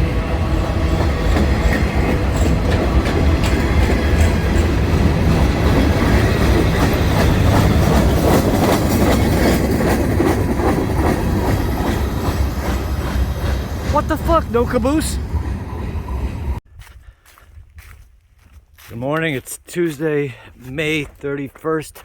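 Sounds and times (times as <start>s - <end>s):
wheels clacking over rail joints: 0.0s - 15.7s
freight train cars rumbling: 0.0s - 16.6s.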